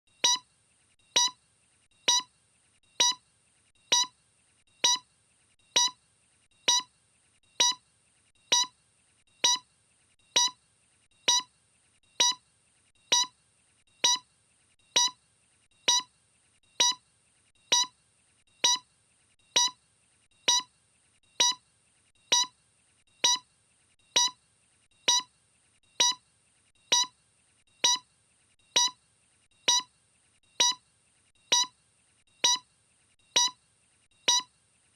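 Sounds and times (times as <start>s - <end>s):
short electronic beep: 0.2s - 0.4s, 1.2s - 1.4s, 2.1s - 2.3s, 3.0s - 3.2s, 3.9s - 4.1s, 4.8s - 5.0s, 31.5s - 31.7s, 33.4s - 33.6s, 34.3s - 34.5s.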